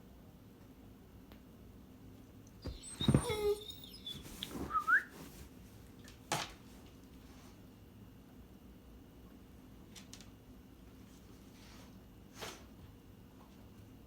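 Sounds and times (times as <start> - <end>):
dog whining yowl: 2.6 - 5.3
dog sneezing: 2.7 - 5.1.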